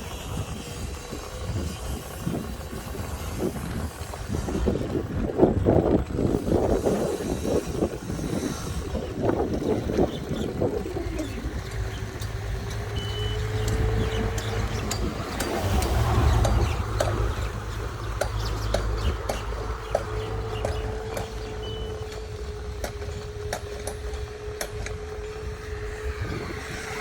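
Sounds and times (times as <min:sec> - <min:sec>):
boat engine low rumble: 0:00.0 - 0:27.0
engine tone rising in pitch: 0:10.3 - 0:18.6, 0:24.1 - 0:27.0
rushing noise: 0:25.5 - 0:27.0.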